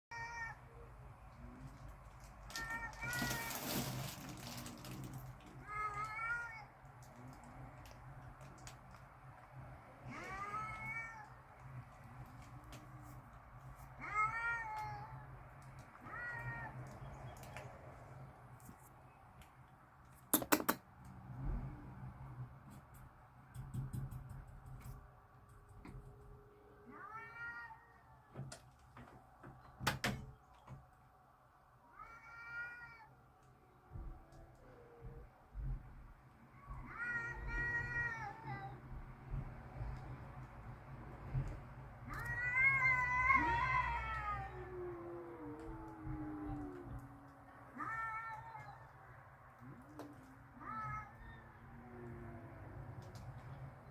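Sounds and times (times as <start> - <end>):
cats yowling: 2.4 - 7.6, 9.9 - 13.2, 13.8 - 17.6, 26.7 - 28.4, 31.9 - 33.2, 36.4 - 38.9, 42.0 - 53.6.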